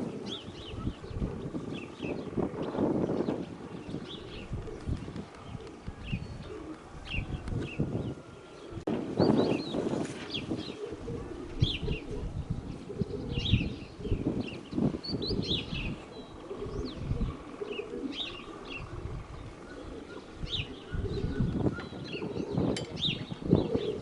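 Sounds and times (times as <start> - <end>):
pigeons cooing: 0.0 - 24.0
wind buffeting microphone: 0.0 - 24.0
small birds chirping: 12.7 - 24.0.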